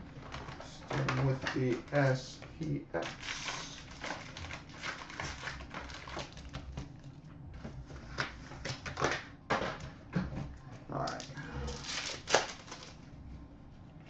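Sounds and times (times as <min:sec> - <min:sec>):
packaging crinkling and tearing: 0:00.2 - 0:02.2, 0:03.0 - 0:07.2, 0:08.0 - 0:09.3, 0:11.0 - 0:13.0.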